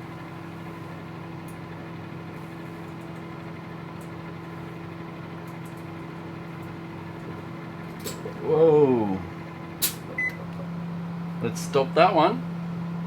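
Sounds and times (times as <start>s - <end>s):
microwave oven humming: 0.0s - 13.0s.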